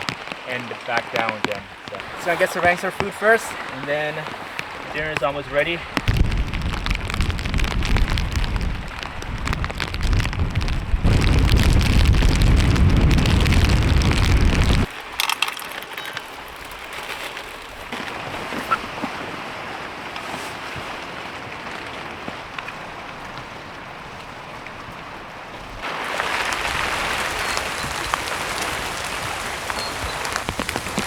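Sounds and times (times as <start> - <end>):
heavy rain: 0.0 - 15.3, 25.8 - 31.0
wind buffeting microphone: 4.3 - 14.9
deep rumble: 6.1 - 14.9.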